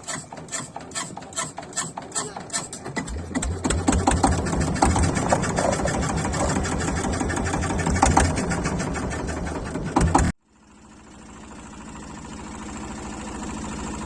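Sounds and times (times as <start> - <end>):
boat engine running: 0.0 - 10.4.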